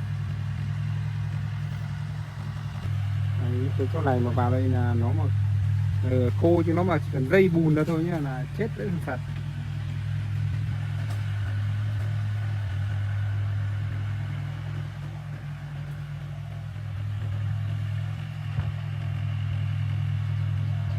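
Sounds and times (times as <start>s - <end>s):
heavy engine running: 0.0s - 20.9s.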